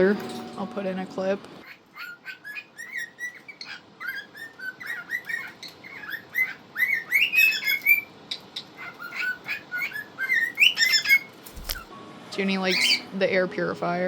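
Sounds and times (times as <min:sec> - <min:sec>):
cockatiels chirping and whistling: 0:01.6 - 0:11.9, 0:12.7 - 0:13.1.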